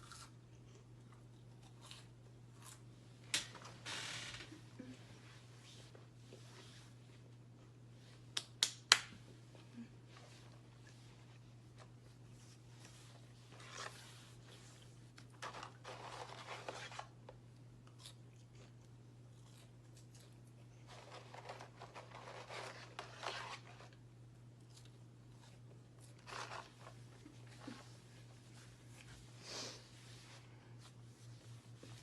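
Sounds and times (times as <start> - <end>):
crunching and chewing: 0.0 - 3.0, 15.1 - 23.2
food wrapper rustling: 15.2 - 17.2.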